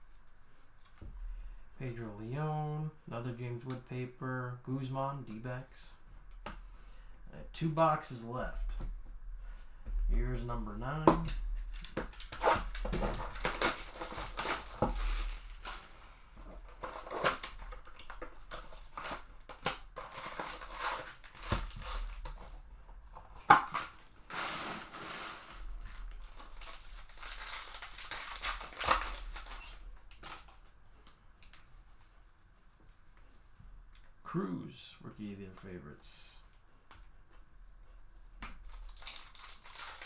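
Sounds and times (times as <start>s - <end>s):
wrappers crinkling: 10.5s - 32.0s, 38.6s - 40.0s
card packs ripped open: 11.3s - 22.4s, 23.5s - 30.6s, 38.7s - 40.0s.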